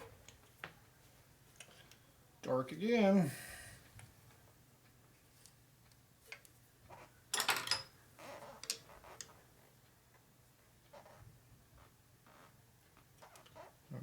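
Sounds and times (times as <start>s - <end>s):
light clicks and taps of hand work: 5.4s - 6.6s.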